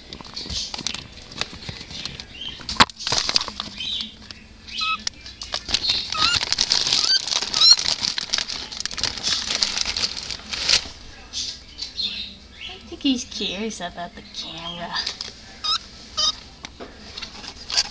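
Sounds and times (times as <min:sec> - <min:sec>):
bird rustling and scrabbling: 0:00.0 - 0:04.4, 0:05.4 - 0:11.6, 0:15.0 - 0:17.9.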